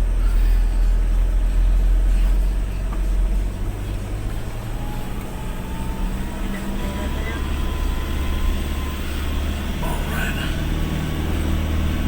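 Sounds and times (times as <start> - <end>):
vehicle engine rumbling under load: 0.0 - 12.0.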